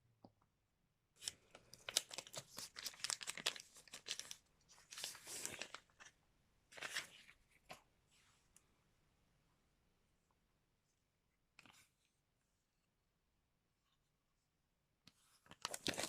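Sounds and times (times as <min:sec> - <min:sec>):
packaging crinkling: 0:01.2 - 0:06.1, 0:15.6 - 0:16.0
packaging tearing: 0:01.8 - 0:05.9, 0:15.6 - 0:16.0.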